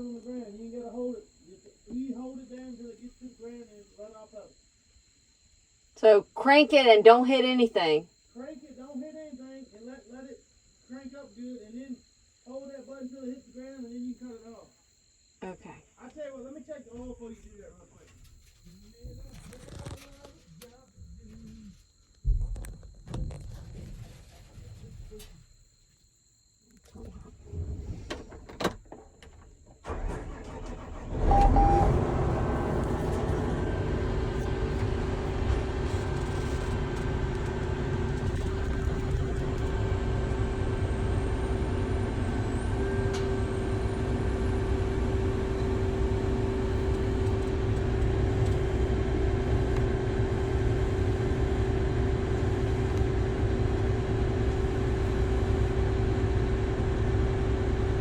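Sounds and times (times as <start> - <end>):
constant engine whine: 26.8 - 58.0
diesel engine cranking and starting: 29.7 - 58.0
diesel engine running: 29.8 - 58.0.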